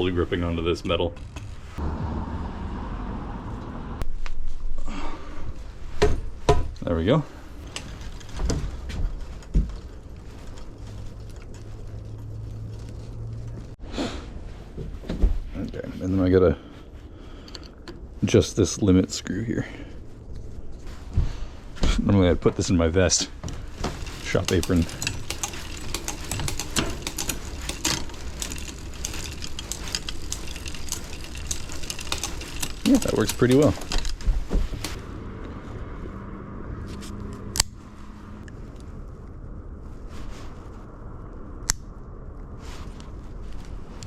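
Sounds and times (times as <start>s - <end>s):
bicycle freewheel ticking: 23.9s - 34.2s.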